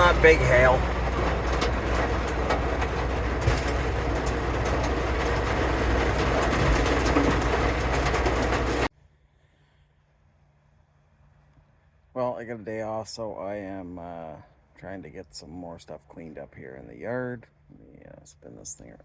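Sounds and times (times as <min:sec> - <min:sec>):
engine humming: 0:00.0 - 0:08.9
hail pelting a vehicle: 0:00.0 - 0:08.9.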